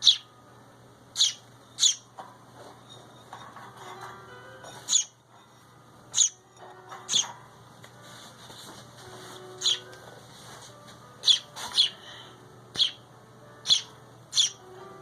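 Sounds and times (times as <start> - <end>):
bird chirping: 0.0 - 0.4, 1.1 - 2.1, 4.8 - 5.2, 6.1 - 6.4, 7.0 - 7.4, 9.6 - 9.9, 11.2 - 12.0, 12.7 - 14.7.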